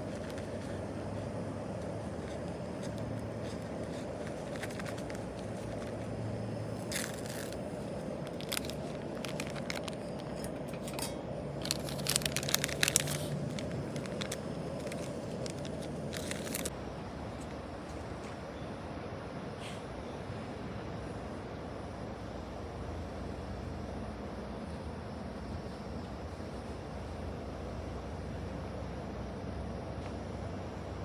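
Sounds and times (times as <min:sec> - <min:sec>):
scattered clicks and crackles: 0:00.0 - 0:16.8.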